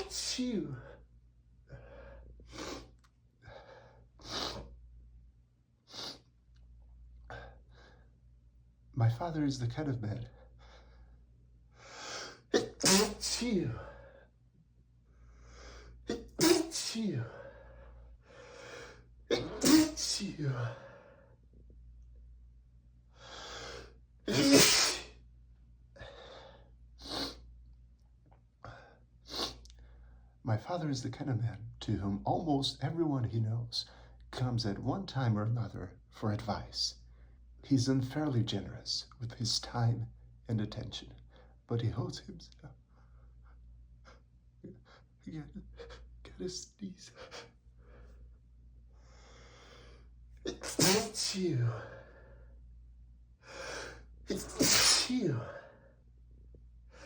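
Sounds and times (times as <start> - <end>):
man sneezing: 0.0 - 1.0, 4.2 - 4.7, 12.0 - 14.0, 16.0 - 17.4, 19.3 - 20.8, 24.3 - 25.2, 27.0 - 27.4, 29.3 - 29.6, 50.4 - 52.0, 53.7 - 55.8
man breathing hard: 1.7 - 4.6, 11.8 - 12.5, 17.1 - 19.1, 20.7 - 21.4, 23.2 - 24.0, 26.0 - 26.7, 49.0 - 50.1, 51.7 - 52.6, 53.4 - 54.1.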